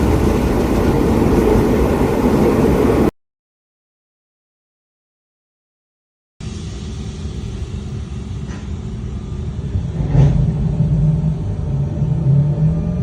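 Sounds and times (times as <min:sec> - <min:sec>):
electric train rumbling: 0:00.0 - 0:03.1, 0:06.4 - 0:13.0.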